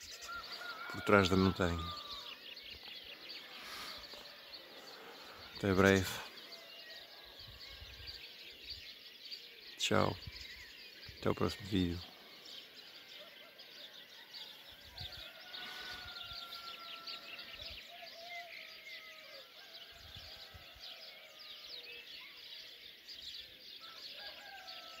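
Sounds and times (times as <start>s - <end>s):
distant rooster crowing: 0.0s - 8.2s, 13.1s - 21.9s, 23.8s - 25.0s
songbirds chirping and twittering: 0.0s - 25.0s.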